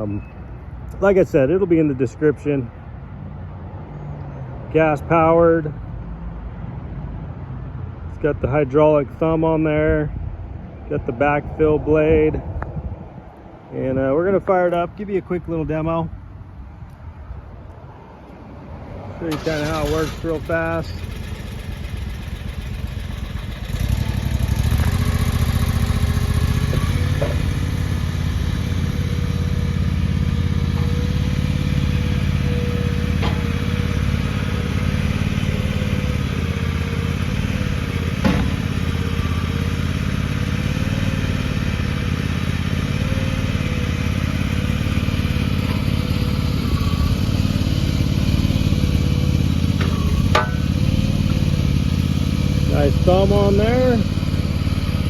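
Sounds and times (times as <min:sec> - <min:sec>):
excavator engine running: 0:19.3 - 0:55.0
hydraulic whine: 0:19.3 - 0:55.0
knocks and clanks: 0:26.4 - 0:28.0, 0:30.6 - 0:34.2, 0:38.1 - 0:39.0, 0:49.6 - 0:51.6.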